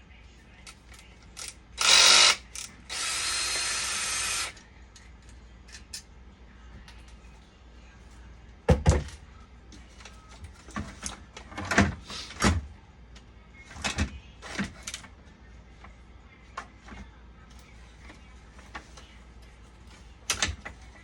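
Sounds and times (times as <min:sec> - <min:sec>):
low steady hum: 0:00.0 - 0:21.0.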